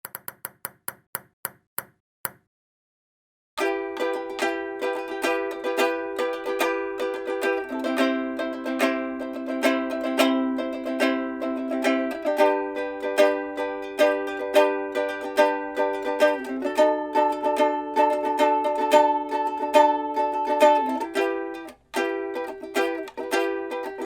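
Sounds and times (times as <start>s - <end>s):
ukulele strumming chords: 3.6s - 24.0s.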